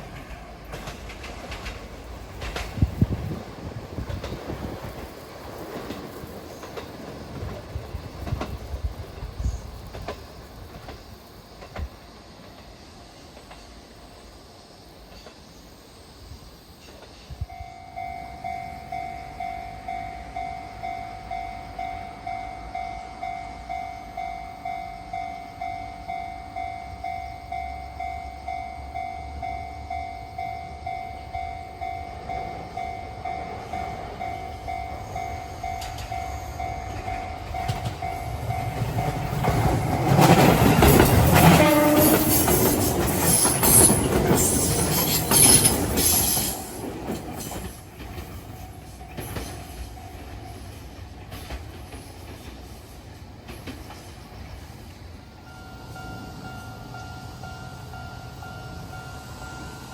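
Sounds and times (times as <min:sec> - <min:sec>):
train wheels clattering on rails: 0:00.0 - 0:14.0, 0:16.8 - 0:59.8
level-crossing warning bell: 0:17.4 - 0:51.8, 0:55.3 - 0:59.9.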